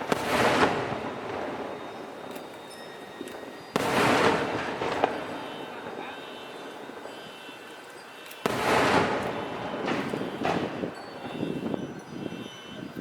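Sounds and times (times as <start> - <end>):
sharp firework crack: 0.0 - 2.7, 3.3 - 6.1, 8.4 - 11.5
fireworks bursting: 0.0 - 13.0.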